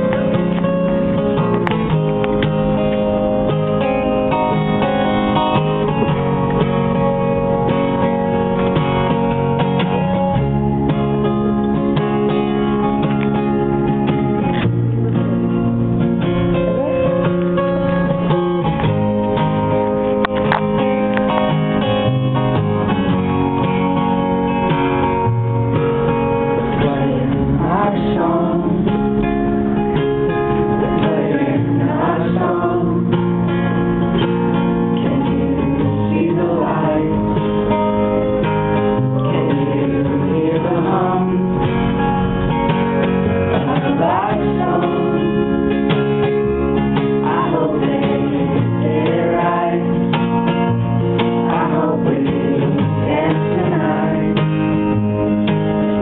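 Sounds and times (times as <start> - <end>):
strummed acoustic guitar: 0.0 - 56.0
person singing: 26.6 - 29.2, 30.8 - 33.2, 35.0 - 37.6, 39.0 - 41.7, 43.5 - 45.7, 47.2 - 50.1, 51.4 - 54.5.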